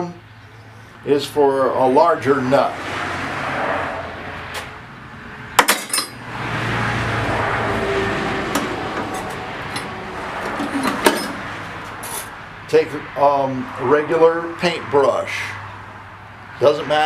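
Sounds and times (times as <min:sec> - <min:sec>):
tool handling noise: 0:08.5 - 0:12.4
metal hand tools clinking: 0:09.2 - 0:12.3.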